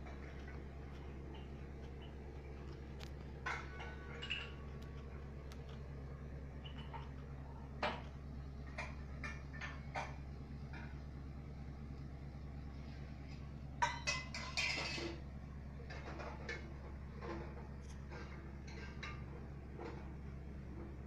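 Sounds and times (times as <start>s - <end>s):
clinks and knocks: 3.0s - 5.7s, 13.8s - 15.2s.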